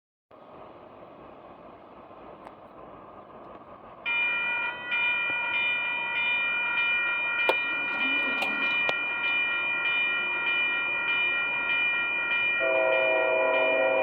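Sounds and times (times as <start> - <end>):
oncoming train noise: 0.3 - 14.0
locomotive air horn chord: 12.6 - 14.0.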